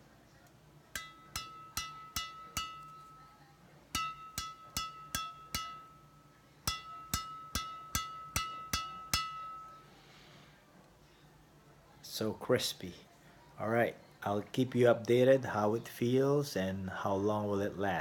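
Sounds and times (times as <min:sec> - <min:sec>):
racket strings high ringing ping: 0:01.0 - 0:03.3, 0:03.9 - 0:10.0.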